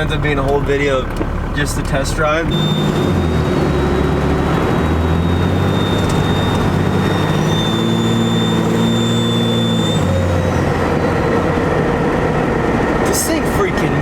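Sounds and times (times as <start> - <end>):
diesel engine under throttle: 0.0 - 14.0
high turbo whistle: 2.5 - 11.3
higher rising turbo whistle: 2.5 - 11.3.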